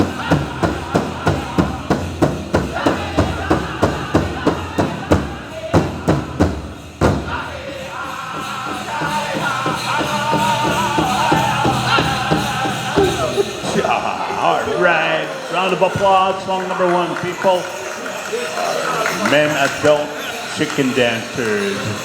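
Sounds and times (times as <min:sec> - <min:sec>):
big drum steady beat: 0:00.0 - 0:14.4
singers' high wavering voices: 0:00.0 - 0:22.0.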